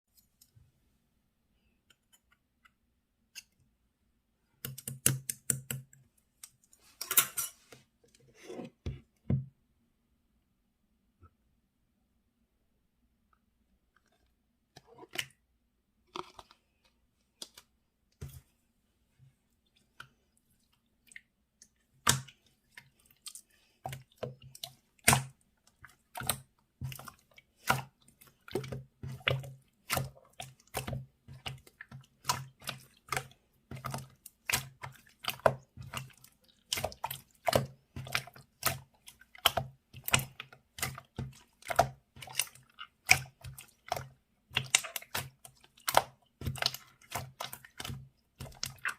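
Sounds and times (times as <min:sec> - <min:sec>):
slime squishing with wet pops: 0:20.0 - 0:48.9.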